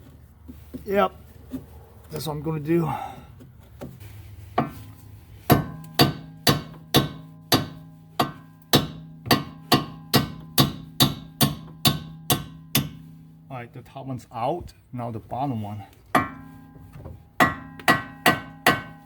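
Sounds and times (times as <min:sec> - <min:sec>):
hammer striking steel bolt: 0:05.5 - 0:13.0, 0:16.2 - 0:16.6, 0:17.4 - 0:19.0.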